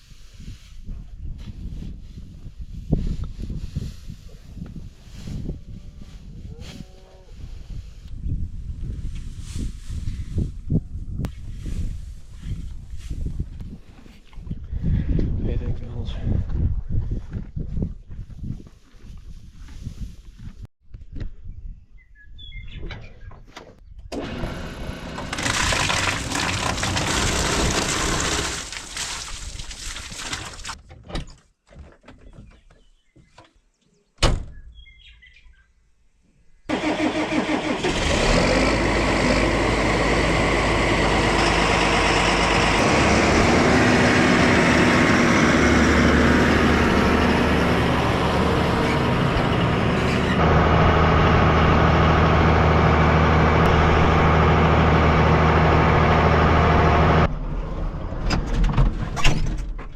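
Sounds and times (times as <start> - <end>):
farm vehicle engine running: 24.2 - 29.0, 36.7 - 58.4.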